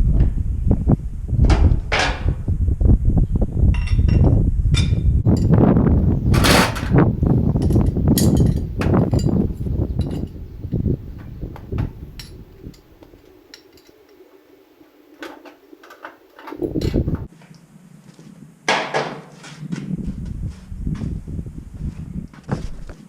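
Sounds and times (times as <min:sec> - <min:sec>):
low rumbling handling noise: 0:00.0 - 0:14.1, 0:15.2 - 0:17.3
metal tools clinking: 0:05.3 - 0:10.9, 0:12.2 - 0:14.2.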